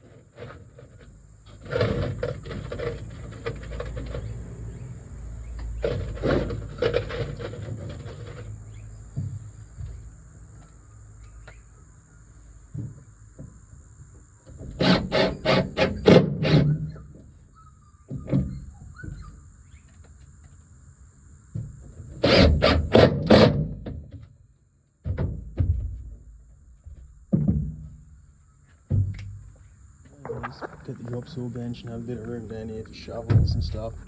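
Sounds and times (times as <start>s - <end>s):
thin high whine: 29.4s - 34.0s.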